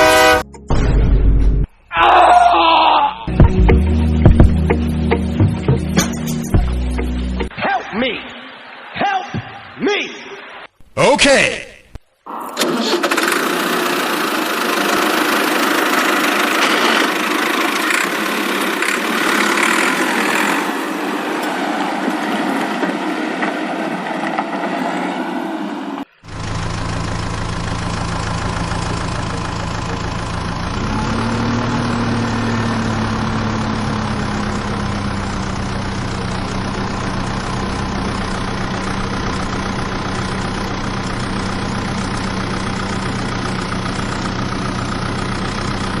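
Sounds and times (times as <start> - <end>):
engine running: 3.3 - 7.5, 12.3 - 46.0
engine idling deeply: 13.6 - 20.7, 26.2 - 46.0.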